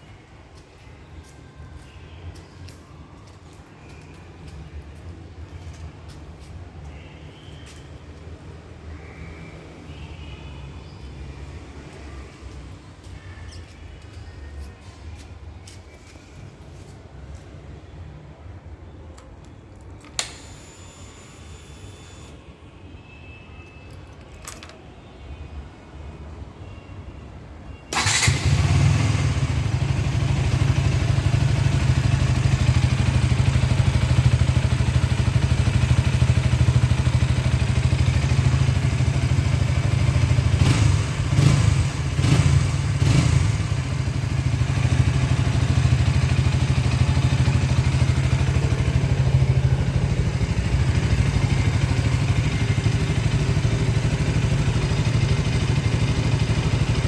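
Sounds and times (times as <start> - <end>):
motorcycle engine idling: 28.0 - 57.0.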